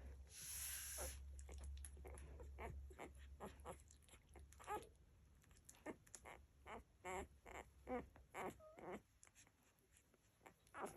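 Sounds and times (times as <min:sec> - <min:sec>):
hiss: 0:00.3 - 0:01.2
puppies squeaking and whimpering: 0:00.9 - 0:05.0, 0:05.7 - 0:10.9.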